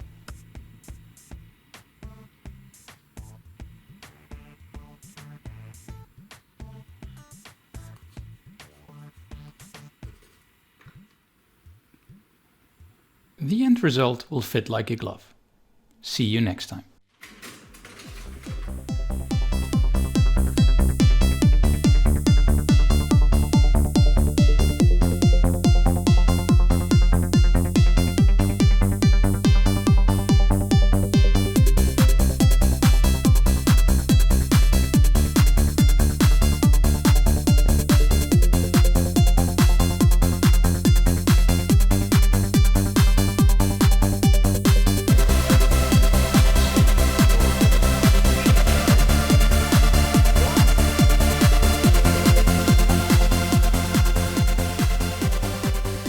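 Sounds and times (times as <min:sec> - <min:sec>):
electronic dance music: 0:18.2 - 0:56.0.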